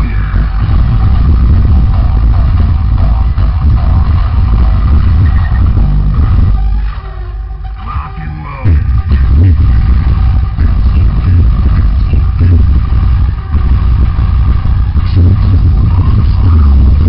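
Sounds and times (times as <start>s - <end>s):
loud distorted bass-heavy music: 0.0s - 17.0s.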